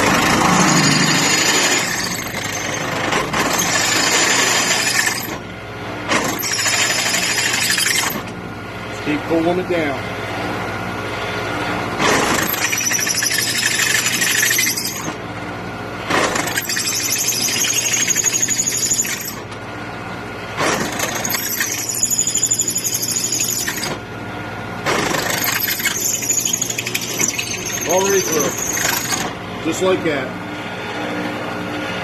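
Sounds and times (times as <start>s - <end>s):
drill bit squealing in steel: 0.0s - 5.4s, 6.2s - 8.3s, 12.2s - 15.2s, 16.2s - 19.5s, 20.6s - 24.0s, 25.0s - 29.3s
drill press motor humming: 0.0s - 8.4s, 11.1s - 29.7s.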